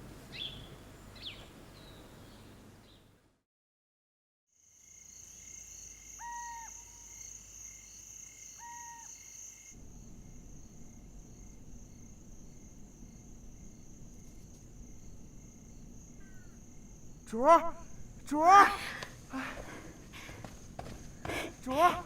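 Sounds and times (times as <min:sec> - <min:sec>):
insects chirring: 0:04.6 - 0:22.0
bird calls: 0:06.2 - 0:07.1, 0:16.2 - 0:16.6.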